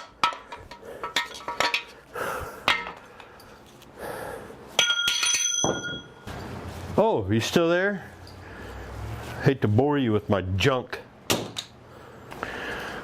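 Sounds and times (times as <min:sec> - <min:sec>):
hammer striking metal: 0:04.8 - 0:06.2.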